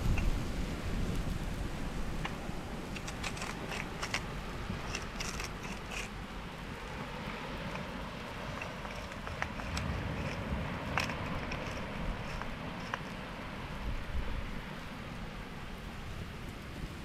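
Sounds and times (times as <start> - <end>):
campfire crackling and popping: 0.0 - 13.4
wind: 0.0 - 17.0.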